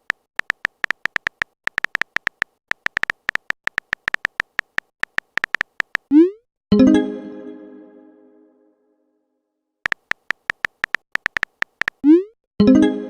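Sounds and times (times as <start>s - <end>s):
phone keyboard typing clicks: 0.0s - 6.2s, 9.8s - 12.2s.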